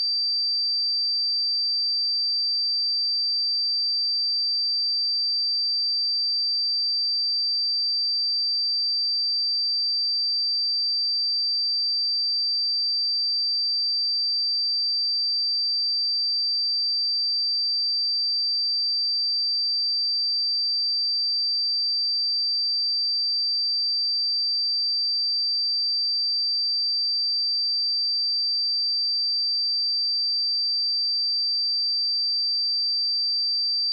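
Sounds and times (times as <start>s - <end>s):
high-pitched sine-wave test tone: 33.7s - 33.9s.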